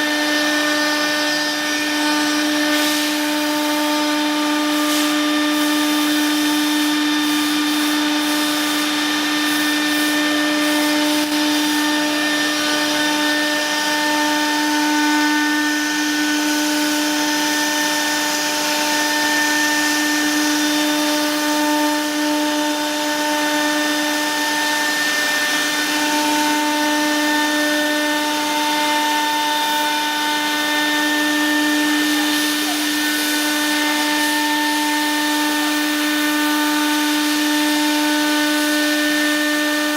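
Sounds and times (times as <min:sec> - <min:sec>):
router spindle motor whine: 0:00.0 - 0:39.9.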